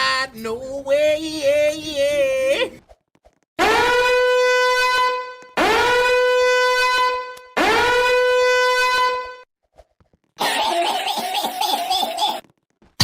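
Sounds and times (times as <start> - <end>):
horn-like sound effect: 3.6 - 9.4.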